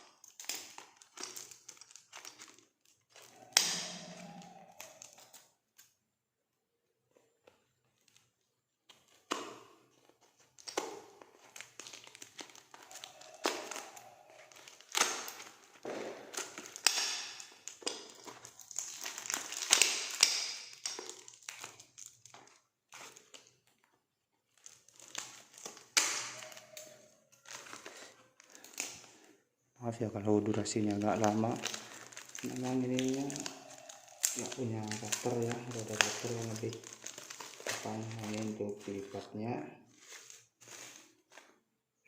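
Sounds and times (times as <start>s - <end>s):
plastic packaging crinkling and tearing: 0.0s - 6.0s, 7.2s - 41.6s.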